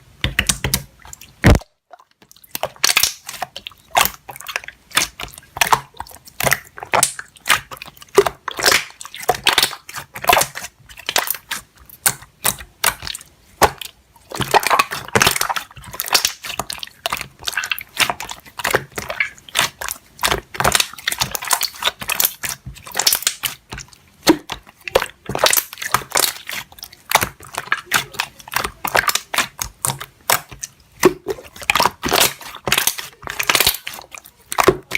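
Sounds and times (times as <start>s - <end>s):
slime crackling pops and clicks: 1.4s - 1.7s, 2.6s - 3.4s.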